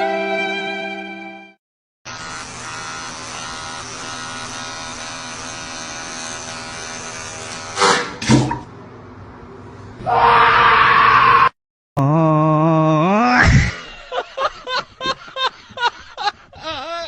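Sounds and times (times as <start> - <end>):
steady electric buzz: 2.1 - 8.2.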